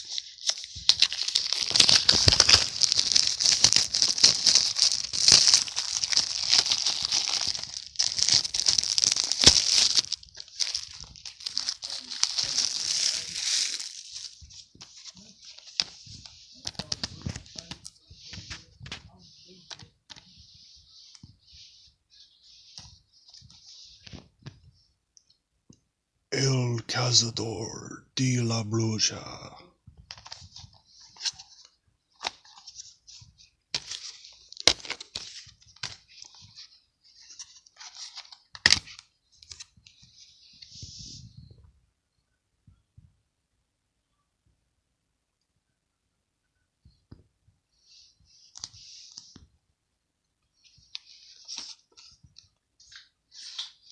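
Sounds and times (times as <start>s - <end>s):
plastic wrap crinkling and tearing: 0.0s - 19.1s
packaging rustling: 0.0s - 20.2s.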